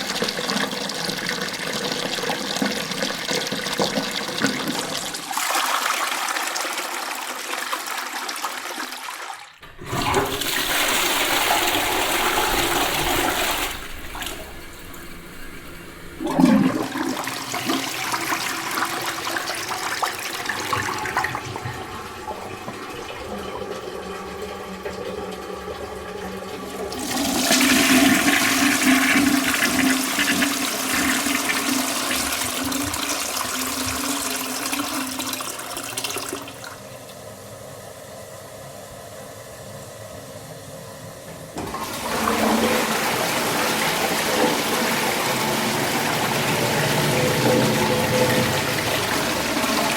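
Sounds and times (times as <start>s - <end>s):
toilet flushing: 0.0s - 49.9s
steady running water: 41.6s - 49.9s.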